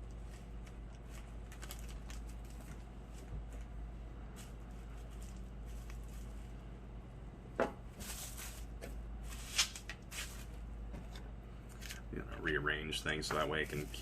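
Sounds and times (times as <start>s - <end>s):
steady low hum: 0.0s - 14.0s
plastic bags crinkling: 0.2s - 3.7s, 4.3s - 6.5s.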